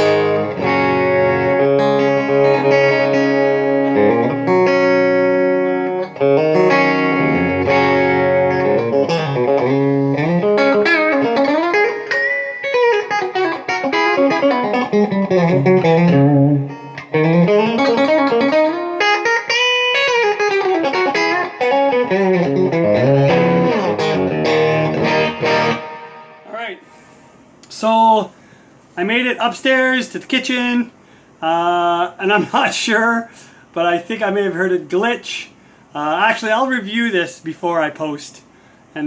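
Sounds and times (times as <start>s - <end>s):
electric guitar chords and lead: 0.0s - 27.3s.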